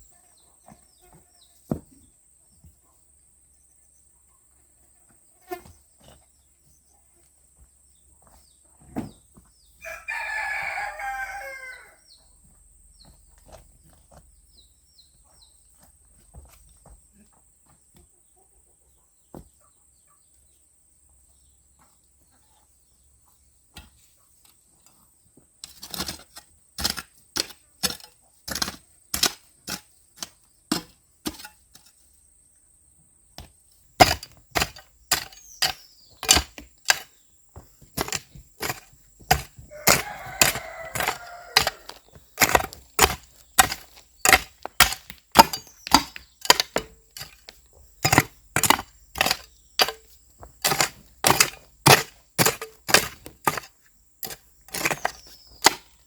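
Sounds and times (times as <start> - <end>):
hand tool chopping strikes: 34.0 - 37.1, 38.0 - 56.0.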